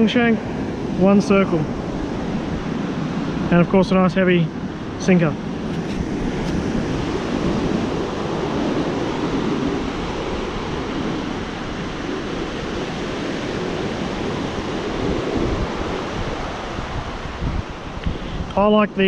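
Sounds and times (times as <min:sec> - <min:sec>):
waves breaking: 0:00.0 - 0:19.0
wind on microphone: 0:00.0 - 0:19.0.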